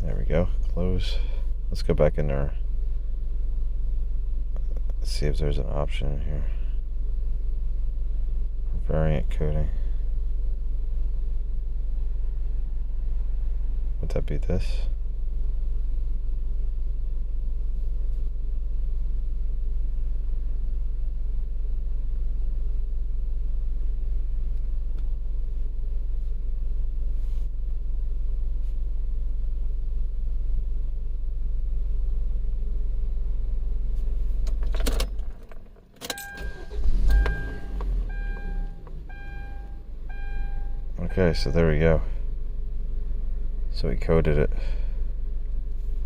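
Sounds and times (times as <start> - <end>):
car engine humming: 0.0 - 46.0
engine switch click: 34.4 - 40.2
dashboard warning chime beeping: 36.0 - 41.8.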